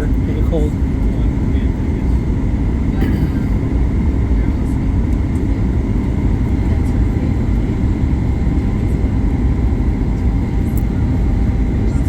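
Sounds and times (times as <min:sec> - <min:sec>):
airflow rush in aircraft cabin: 0:00.0 - 0:12.0
jet engine hum: 0:00.0 - 0:12.0.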